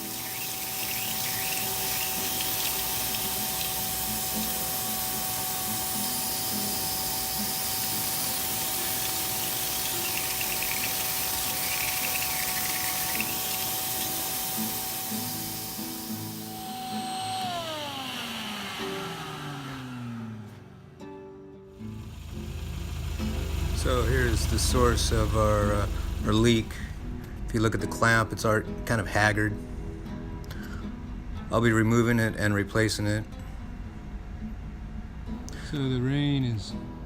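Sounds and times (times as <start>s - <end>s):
garden sprayer hissing: 0.0s - 20.5s, 21.8s - 27.0s
vacuum cleaner blowing air: 0.0s - 20.7s, 21.8s - 27.0s.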